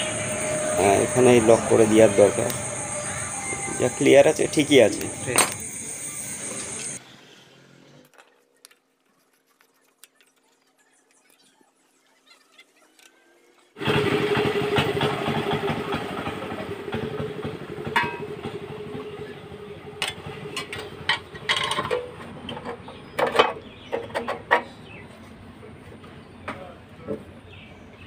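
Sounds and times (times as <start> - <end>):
diesel engine running: 0.0 - 7.4, 13.8 - 23.0.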